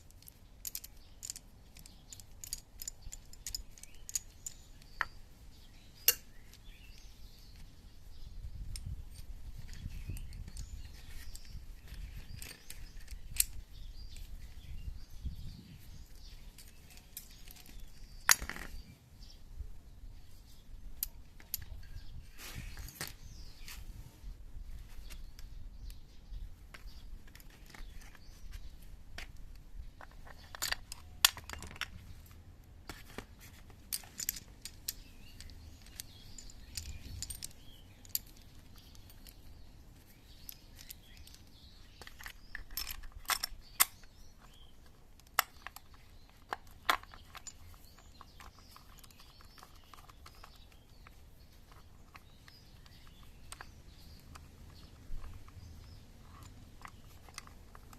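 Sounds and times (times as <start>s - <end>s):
metal tools clinking: 0.0s - 7.4s, 30.0s - 33.2s, 33.8s - 57.9s.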